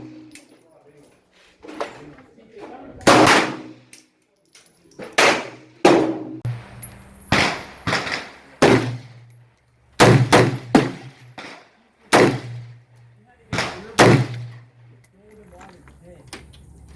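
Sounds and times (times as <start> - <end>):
pistol shots with echo: 3.0 - 3.8, 5.2 - 9.4, 10.0 - 12.9, 13.5 - 14.9.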